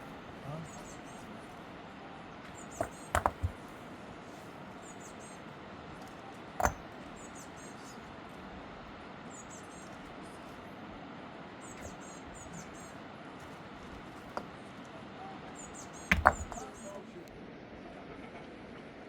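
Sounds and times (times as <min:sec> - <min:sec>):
sharp knocks: 0:16.1 - 0:16.7.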